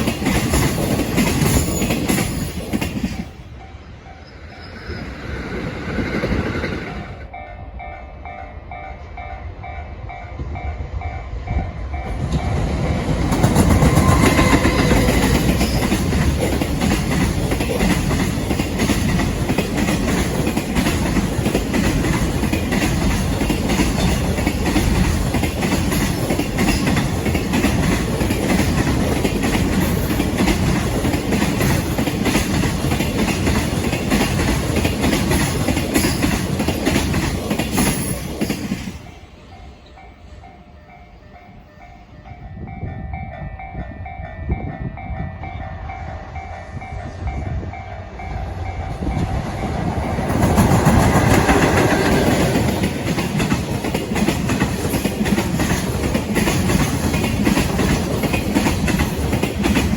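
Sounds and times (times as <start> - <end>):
freight train wheels clattering: 0.0 - 3.4, 11.9 - 41.2, 45.1 - 59.9.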